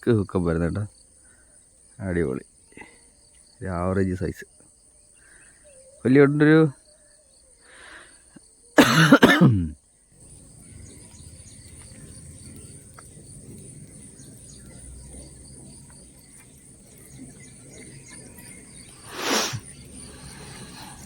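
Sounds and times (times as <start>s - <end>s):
insects chirping: 0.0s - 21.0s
low background rumble: 10.2s - 21.0s.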